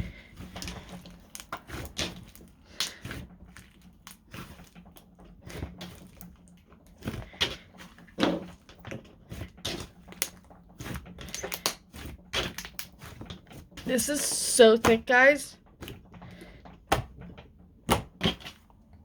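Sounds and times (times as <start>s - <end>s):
slime squeezed with sticky pops: 9.3s - 13.2s.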